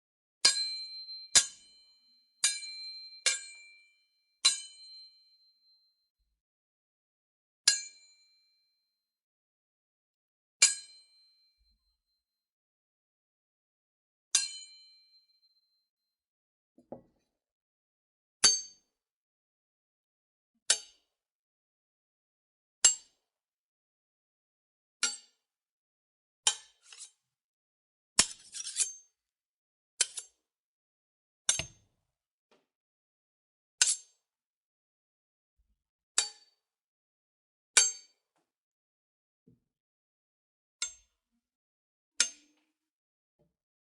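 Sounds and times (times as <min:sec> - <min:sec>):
sword blades clashing: 0:28.2 - 0:29.0.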